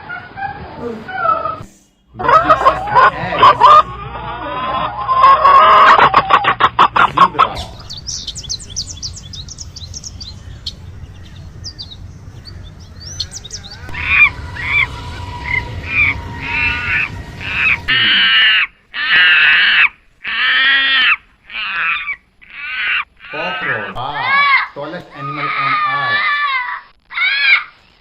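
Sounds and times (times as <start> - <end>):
low background rumble: 1.9 - 20.2
lower bird calls: 5.8 - 23.8
small birds chirping: 6.4 - 17.9
loud drawn-out cries: 11.0 - 27.8.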